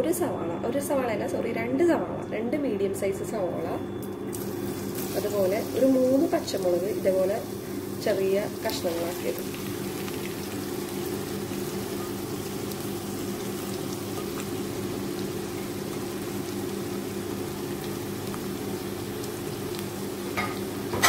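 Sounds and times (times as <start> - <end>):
low steady hum: 0.0 - 21.0
onions sizzling in hot oil: 4.3 - 21.0.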